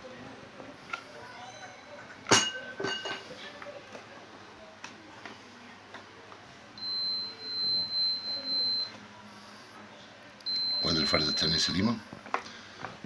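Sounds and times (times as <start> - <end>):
multimeter continuity beep: 6.8 - 9.0, 10.4 - 11.8.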